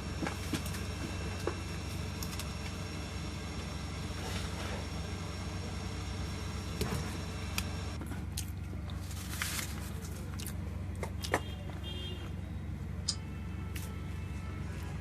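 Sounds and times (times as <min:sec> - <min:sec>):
electrical hum: 0:00.0 - 0:15.0
tools clicking and tapping: 0:13.1 - 0:13.3.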